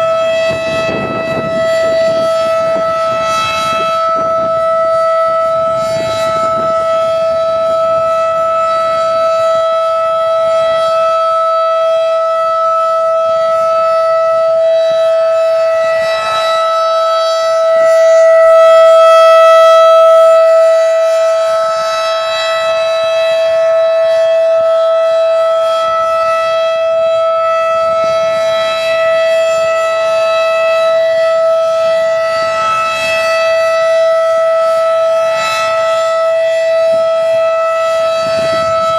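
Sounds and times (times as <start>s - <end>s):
outdoor warning siren: 0.0s - 38.9s.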